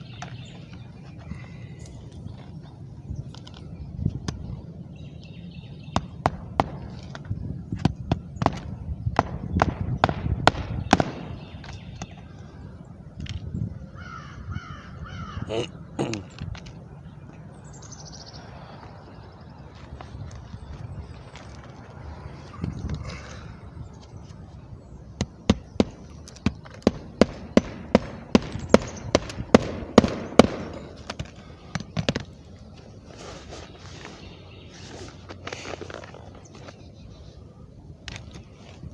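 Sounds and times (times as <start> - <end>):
bird calling: 10.7 - 12.8, 13.9 - 16.4, 24.9 - 32.2.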